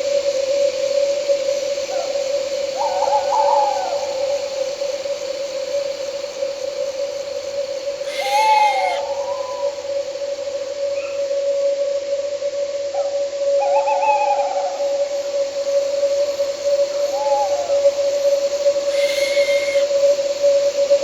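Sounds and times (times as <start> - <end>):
crickets droning: 0.0 - 21.0
burst of hiss: 7.8 - 9.9, 17.9 - 20.3
owl calling: 7.9 - 10.4, 16.2 - 20.2.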